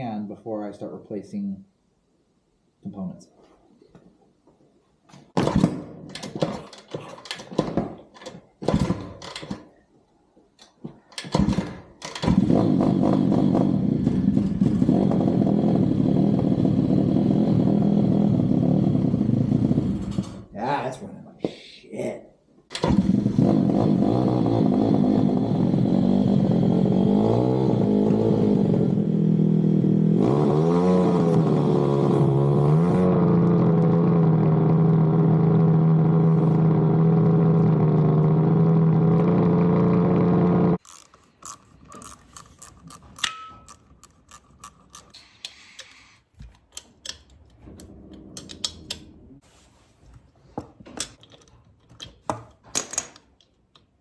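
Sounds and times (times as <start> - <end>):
small engine revving roughly: 12.2 - 20.4, 22.8 - 41.0.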